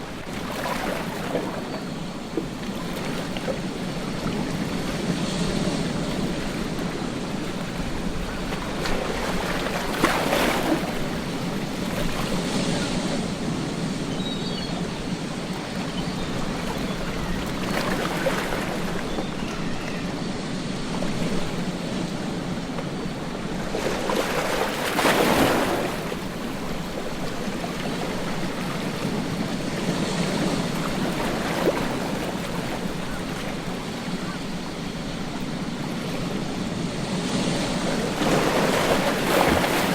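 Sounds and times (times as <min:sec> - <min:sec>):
ocean waves crashing on beach: 0:00.0 - 0:39.9.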